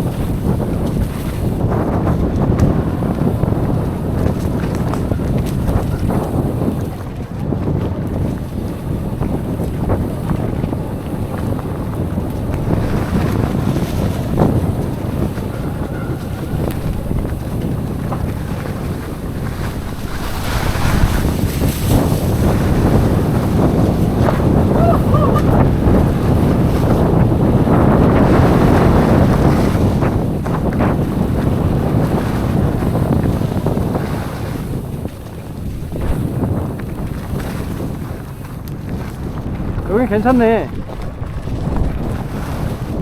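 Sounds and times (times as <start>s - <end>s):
wind buffeting microphone: 0.0s - 43.0s.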